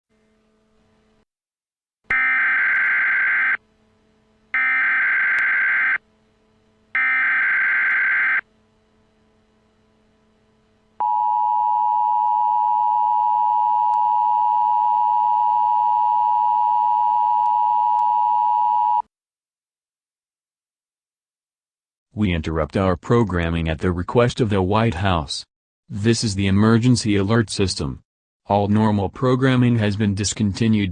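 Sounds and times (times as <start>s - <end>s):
screeching data bursts: 2.1s - 3.6s, 4.6s - 6.0s, 7.0s - 8.4s
two-tone attention signal: 2.1s - 3.6s.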